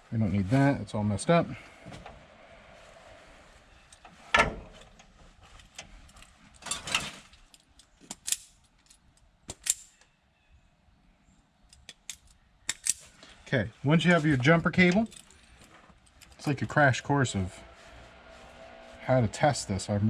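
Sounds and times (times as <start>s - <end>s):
metallic clicks and rattles of tools: 5.6s - 10.1s, 11.7s - 13.2s.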